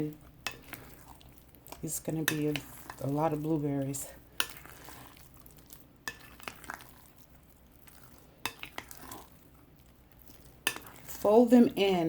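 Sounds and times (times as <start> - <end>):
wet stirring and scraping: 0.0 - 12.0.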